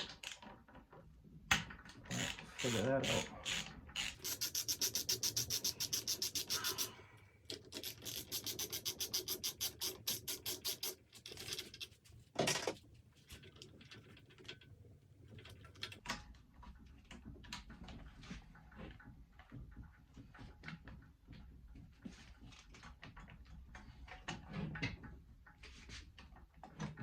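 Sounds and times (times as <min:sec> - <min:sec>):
hand tool rasping on metal: 0:02.1 - 0:07.0.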